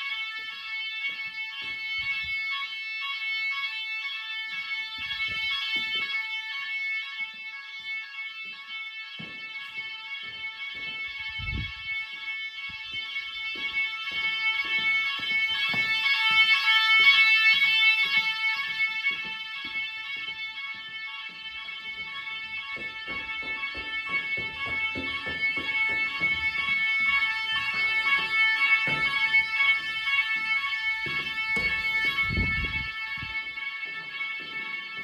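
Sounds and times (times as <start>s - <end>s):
fire alarm electronic tone: 0.0s - 35.0s
faint low thumps: 31.2s - 33.4s.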